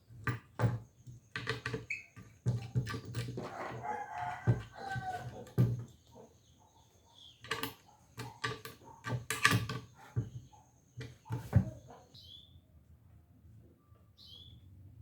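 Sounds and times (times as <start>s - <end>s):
wooden knocks and clatters: 0.1s - 6.4s, 7.4s - 12.0s
rooster crowing: 3.4s - 5.6s.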